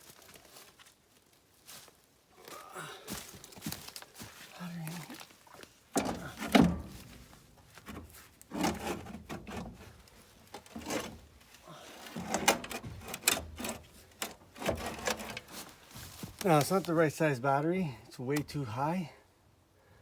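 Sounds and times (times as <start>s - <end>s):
heavy battery knocking and scraping: 6.0s - 16.4s.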